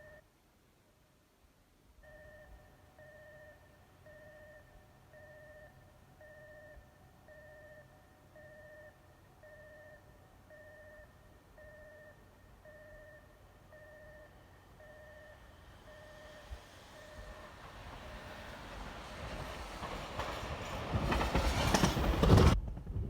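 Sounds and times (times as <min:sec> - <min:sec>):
level crossing warning bell: 0:00.0 - 0:00.2, 0:02.0 - 0:18.2
train approaching: 0:12.6 - 0:23.0.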